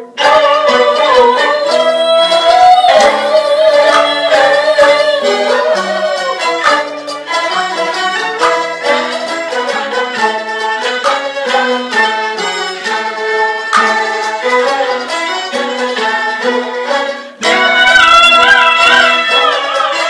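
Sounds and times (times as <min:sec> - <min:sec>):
person singing opera: 0:00.0 - 0:08.1, 0:14.4 - 0:20.0
fiddle playing stepped notes: 0:00.0 - 0:20.0.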